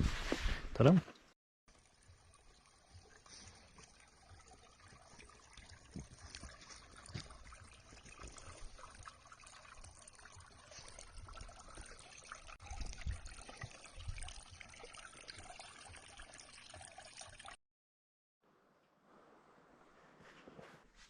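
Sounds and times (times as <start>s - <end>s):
water trickling over rocks: 1.7s - 17.6s.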